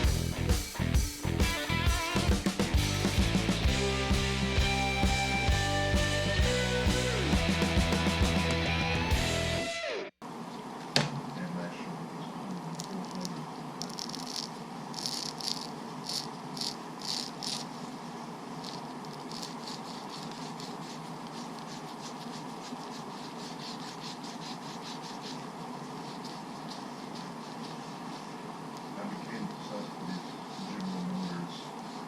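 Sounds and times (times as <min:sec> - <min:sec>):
steady hum: 0:00.0 - 0:32.0
small parts clicking and rattling: 0:12.8 - 0:17.7, 0:18.6 - 0:22.3.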